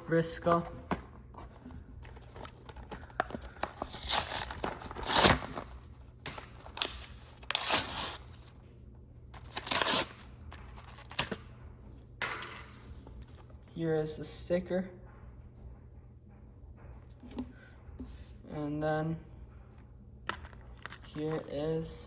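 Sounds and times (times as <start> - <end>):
packaging tearing and crinkling: 2.1 - 5.8, 6.5 - 8.5, 9.4 - 11.4.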